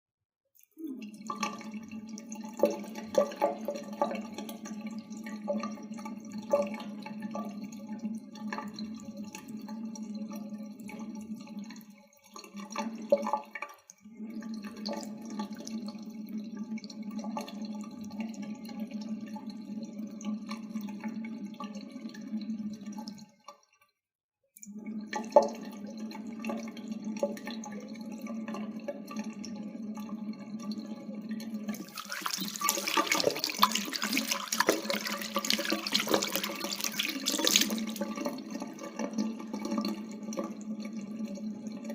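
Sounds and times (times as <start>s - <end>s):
water running from a tap: 0.6s - 13.7s, 25.0s - 41.9s.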